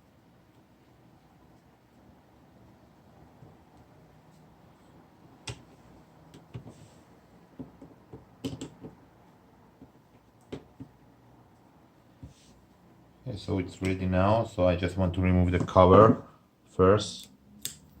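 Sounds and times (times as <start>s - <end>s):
laptop parts clicking and tapping: 7.6s - 9.0s.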